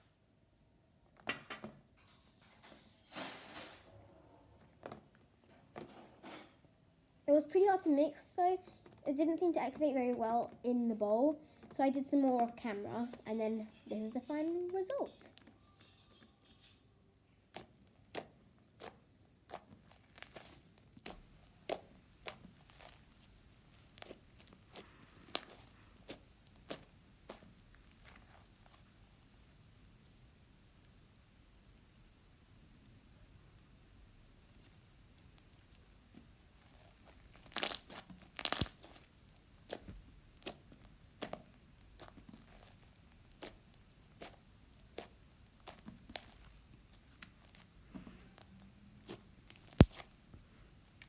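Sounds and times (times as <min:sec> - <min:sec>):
slime squished by hand: 0:17.4 - 0:29.4, 0:34.5 - 0:50.2
slime clicks and pops: 0:38.4 - 0:38.8.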